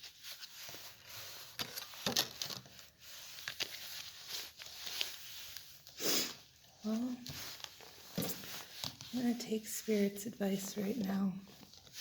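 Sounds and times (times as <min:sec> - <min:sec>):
cards rustling: 0:00.0 - 0:05.9, 0:06.9 - 0:09.4.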